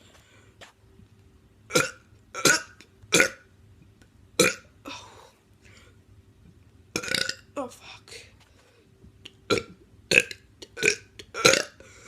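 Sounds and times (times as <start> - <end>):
loud burps: 1.7 - 3.5, 4.4 - 4.8, 7.0 - 7.5, 9.5 - 11.8.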